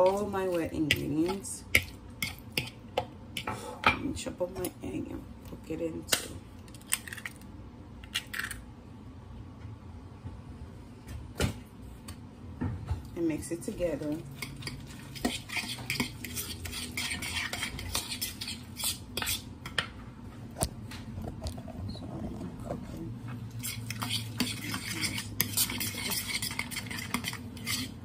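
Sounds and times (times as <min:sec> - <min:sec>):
utensil stirring in a bowl: 0:00.0 - 0:03.6, 0:13.4 - 0:19.8, 0:21.5 - 0:28.0.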